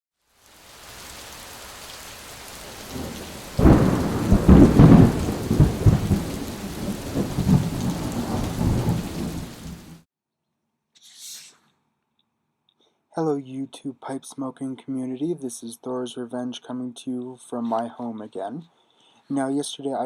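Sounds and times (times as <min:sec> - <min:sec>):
steady rain: 0:00.2 - 0:10.0
thunder rumbling: 0:02.1 - 0:10.0.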